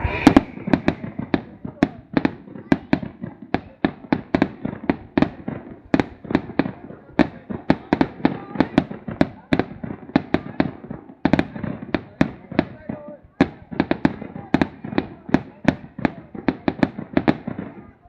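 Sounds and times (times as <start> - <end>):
fireworks bangs echoing: 0.0 - 18.0.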